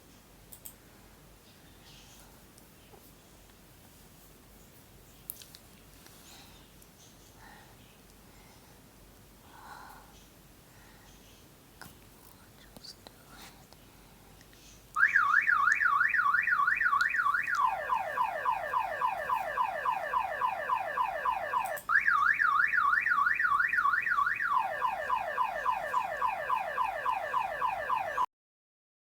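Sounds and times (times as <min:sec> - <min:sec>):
electronic siren alarm warble: 0:15.0 - 0:28.3.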